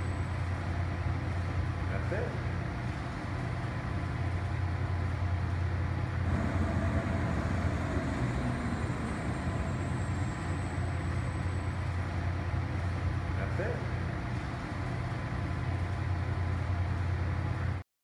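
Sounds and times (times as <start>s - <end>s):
low mechanical rumble with hum: 0.0s - 17.8s
faint high whine: 6.3s - 13.0s.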